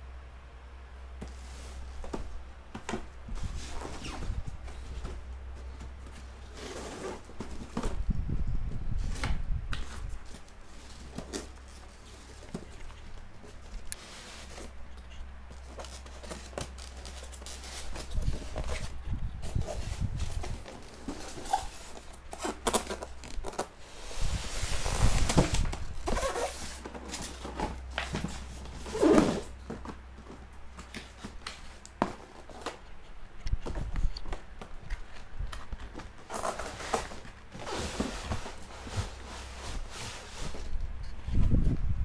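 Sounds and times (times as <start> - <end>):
packaging rustling and tearing: 15.5 - 32.8, 33.6 - 40.7.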